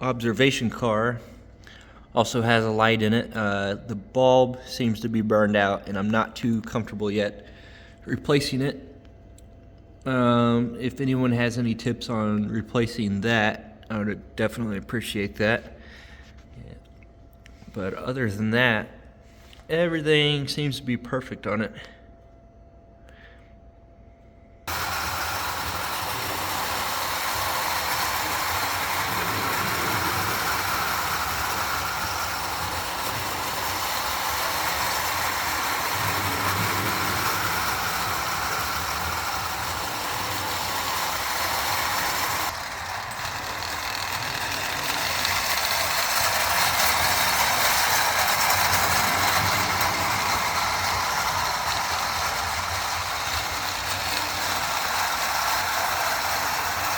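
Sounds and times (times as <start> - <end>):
tin cars rattling on rails: 24.7 - 56.9
toy train gear whir: 24.7 - 56.9.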